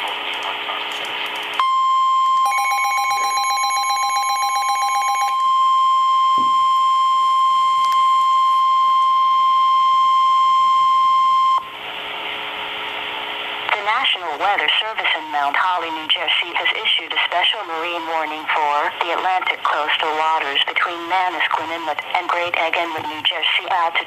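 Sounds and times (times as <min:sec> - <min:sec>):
radio static hiss: 0:00.0 - 0:01.6, 0:11.8 - 0:24.0
steady warning alarm tone: 0:01.6 - 0:11.7.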